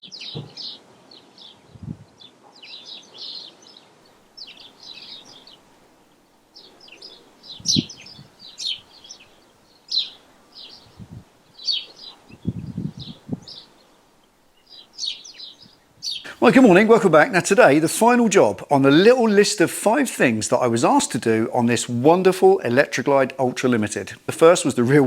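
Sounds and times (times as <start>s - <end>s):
small birds chirping: 0.0s - 17.0s
soft low thuds: 0.3s - 0.7s.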